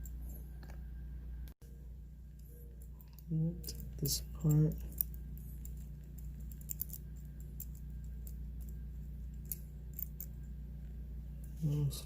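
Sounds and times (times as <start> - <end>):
steady low hum: 0.0 - 12.0
small metal hardware clicking: 2.8 - 8.8.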